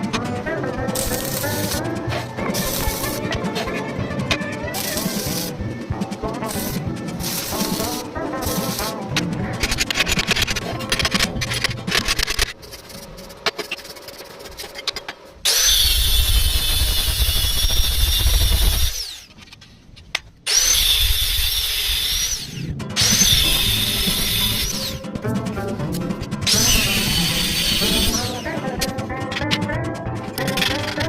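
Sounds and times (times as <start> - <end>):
power tool whining: 15.4 - 19.4, 20.5 - 25.0, 26.5 - 28.6.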